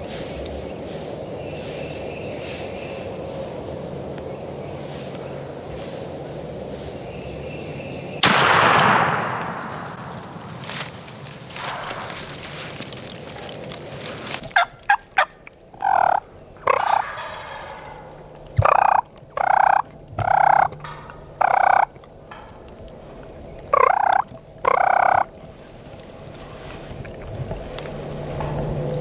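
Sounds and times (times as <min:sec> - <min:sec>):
turkeys gobbling: 0:08.2 - 0:25.7.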